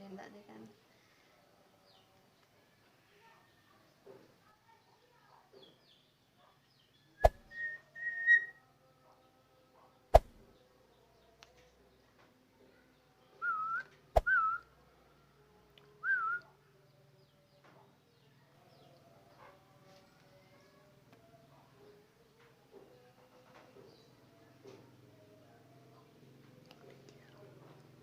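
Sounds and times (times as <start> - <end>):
short whistled notes: 7.2 - 8.6, 13.4 - 14.6.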